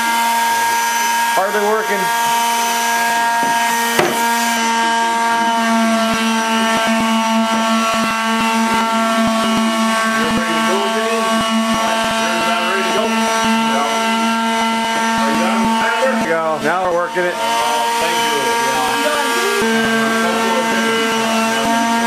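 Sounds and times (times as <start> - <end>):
woodworking machinery humming: 0.0 - 22.0
clicks and knocks: 3.4 - 4.2.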